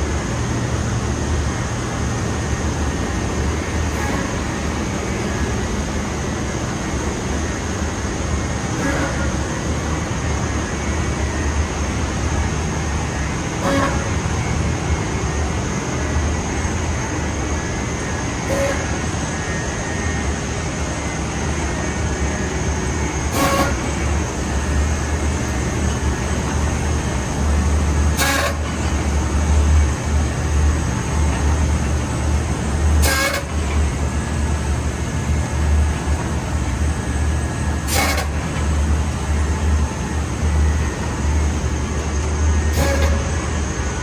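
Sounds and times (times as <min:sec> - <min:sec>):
factory machinery humming: 0:00.0 - 0:44.0
machine hiss: 0:37.7 - 0:38.6.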